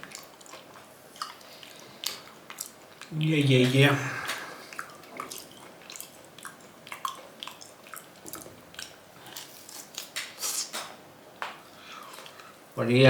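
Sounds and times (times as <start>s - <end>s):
wet chewing of meat: 0.0s - 10.8s.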